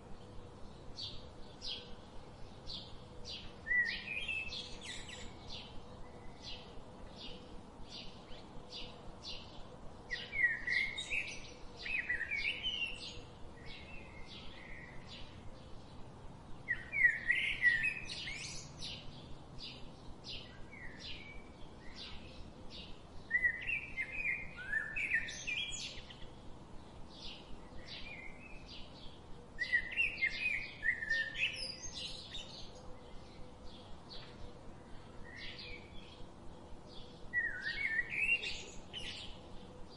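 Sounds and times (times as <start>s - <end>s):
songbird chirps: 0.0s - 39.9s
warbling bird song: 0.0s - 39.9s.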